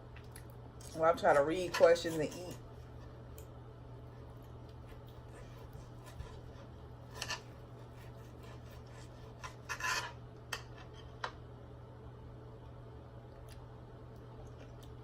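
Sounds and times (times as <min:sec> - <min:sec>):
faint steady hum: 0:00.0 - 0:15.0
cutlery scraping on a plate: 0:01.6 - 0:02.6, 0:06.0 - 0:11.2.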